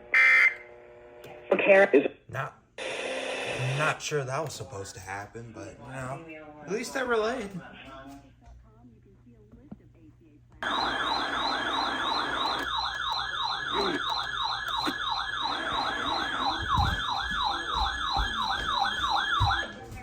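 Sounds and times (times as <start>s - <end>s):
electronic siren yelp: 0.2s - 0.6s, 10.6s - 19.8s.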